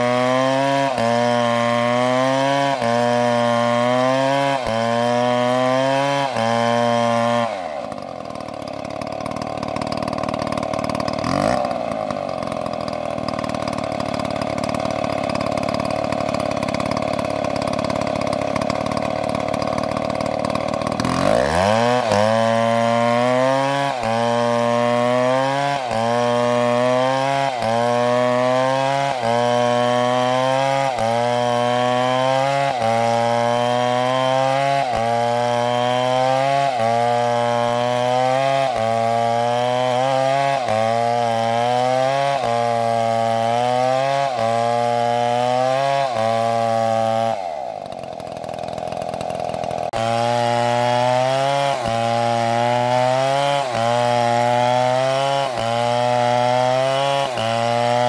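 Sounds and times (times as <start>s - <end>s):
chainsaw cutting wood: 0.0s - 58.0s.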